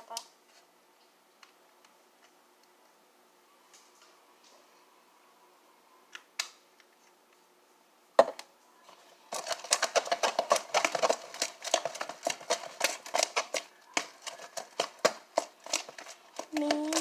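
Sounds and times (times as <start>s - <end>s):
slime stirred in a bowl: 8.9s - 17.0s.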